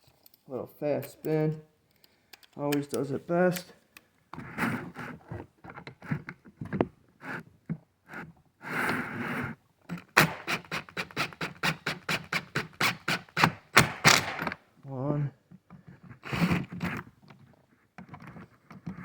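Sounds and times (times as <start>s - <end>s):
tool scraping and handling noise: 2.4s - 7.5s.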